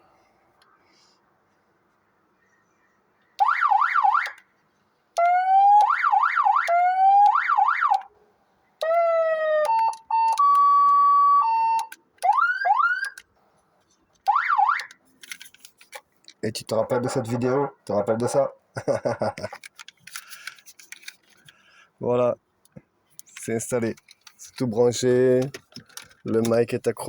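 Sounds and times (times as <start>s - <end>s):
electronic vehicle siren: 3.4s - 4.4s, 5.2s - 8.1s, 8.8s - 13.2s, 14.3s - 15.0s.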